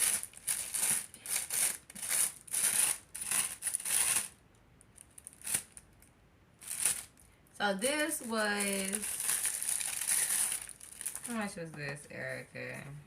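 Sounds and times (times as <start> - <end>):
packaging crinkling: 0.0 - 4.4, 5.0 - 6.0, 6.6 - 7.3, 8.0 - 11.4.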